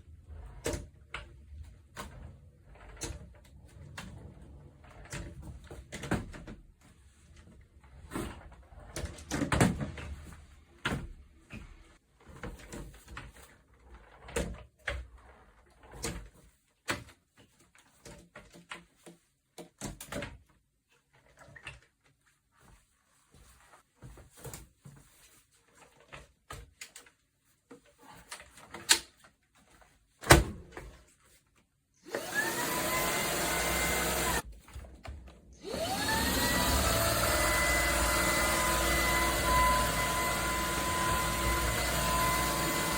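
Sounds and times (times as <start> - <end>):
vacuum motor whine: 32.1 - 34.4, 35.6 - 42.9.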